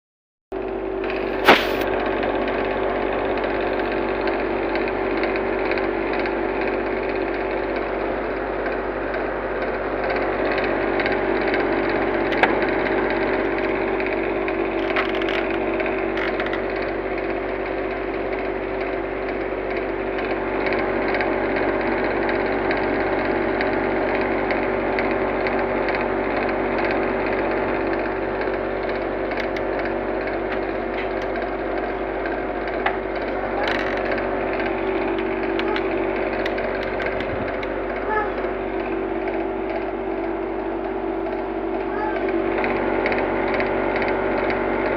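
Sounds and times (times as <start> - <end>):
air conditioner running: 0.6 - 44.9
air conditioner click: 32.7 - 37.8.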